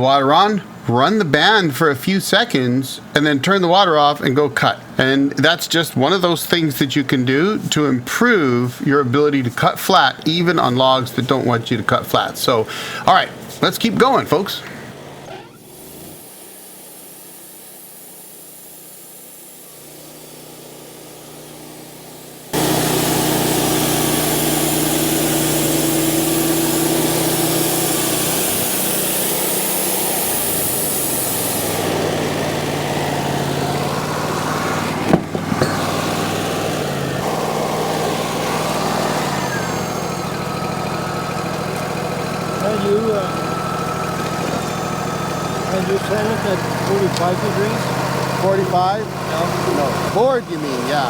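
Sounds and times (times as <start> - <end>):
sawmill engine running: 0.0 - 51.0
band blade sawing log: 22.5 - 51.0
sharp knock: 35.1 - 35.9.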